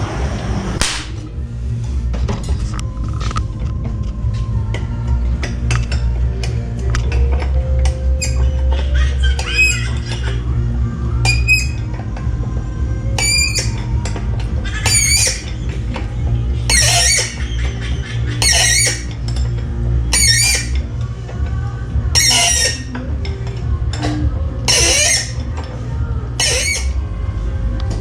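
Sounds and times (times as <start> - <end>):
background music with deep bass: 0.0 - 28.0
high wavering squeal: 8.1 - 10.5, 11.1 - 12.0, 13.1 - 15.9, 16.6 - 21.0, 22.1 - 23.1, 24.0 - 25.6, 26.3 - 27.1.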